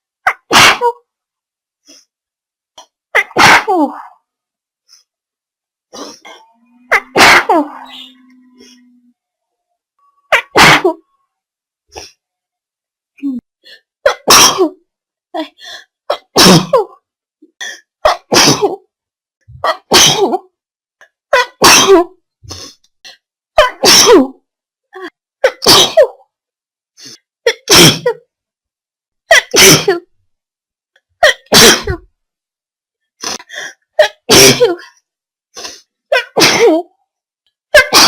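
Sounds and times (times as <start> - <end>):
person sneezing: 0.3 - 1.0, 3.2 - 4.0, 6.0 - 7.8, 10.3 - 11.0, 14.1 - 14.8, 16.1 - 16.9, 18.1 - 18.8, 19.7 - 20.4, 21.4 - 22.8, 23.6 - 24.3, 25.4 - 26.1, 27.5 - 28.2, 29.3 - 30.0, 31.2 - 32.0, 33.2 - 34.8, 35.6 - 36.9, 37.8 - 38.0.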